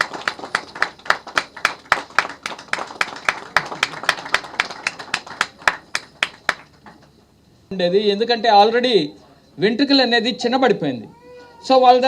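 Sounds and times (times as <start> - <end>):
hands clapping: 0.0 - 7.2.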